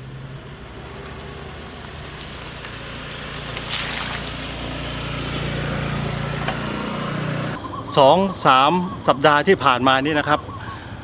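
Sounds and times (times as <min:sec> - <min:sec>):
tyres splashing through puddle: 0:00.0 - 0:07.6
vehicle engine running: 0:00.0 - 0:07.6.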